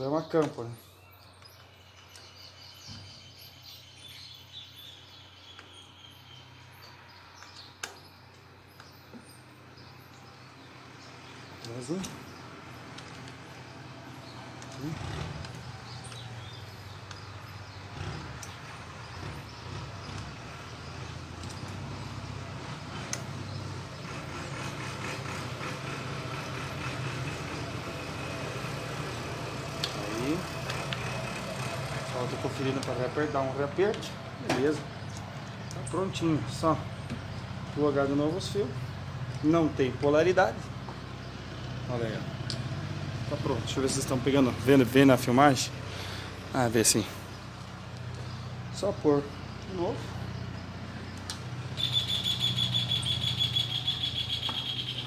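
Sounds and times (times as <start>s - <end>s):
faint bird chirps: 51.8s - 55.0s.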